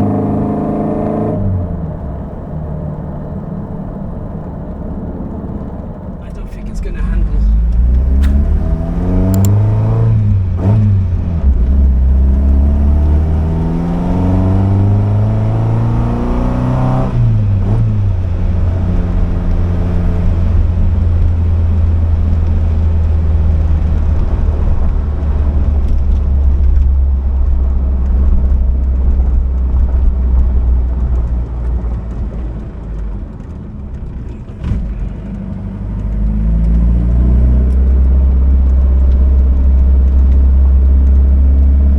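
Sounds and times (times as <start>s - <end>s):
car engine revving and cruising: 0.0s - 41.9s
single click: 8.2s - 8.6s, 9.3s - 9.6s.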